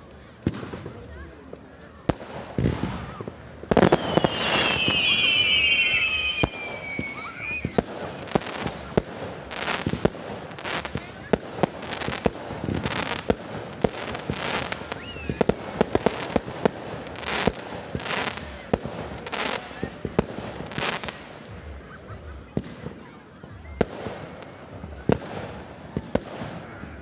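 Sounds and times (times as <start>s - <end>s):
fireworks bangs and cracks: 0.0s - 27.0s
whistling firework: 2.6s - 11.1s, 12.9s - 16.5s.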